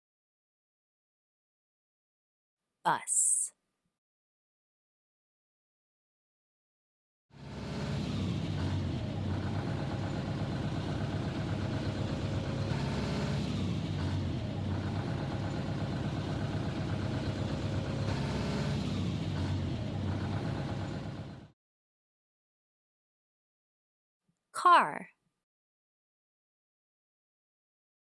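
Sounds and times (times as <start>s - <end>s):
bus engine running: 7.4s - 21.5s.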